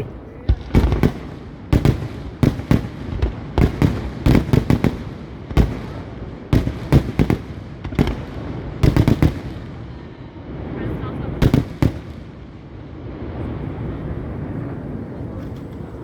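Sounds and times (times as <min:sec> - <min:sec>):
fireworks bursting with loud bangs: 0:00.0 - 0:15.9
rumbling echo: 0:00.0 - 0:16.0.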